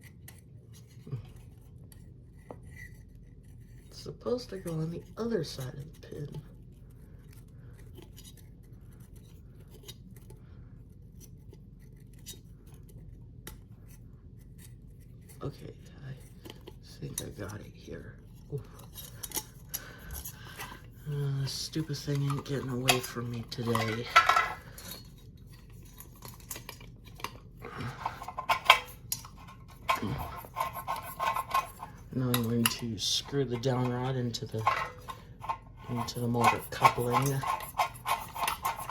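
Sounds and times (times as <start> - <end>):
wires clicking and scraping on rod: 16.1 - 38.9
metal hardware clinking: 21.8 - 27.4, 28.0 - 38.9.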